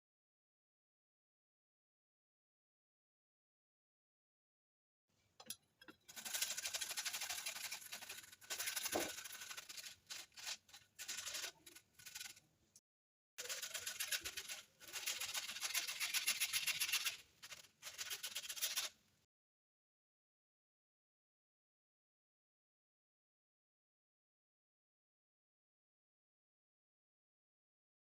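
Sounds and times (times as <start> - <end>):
cucumber grated on metal grater: 6.0 - 12.4, 13.4 - 18.9.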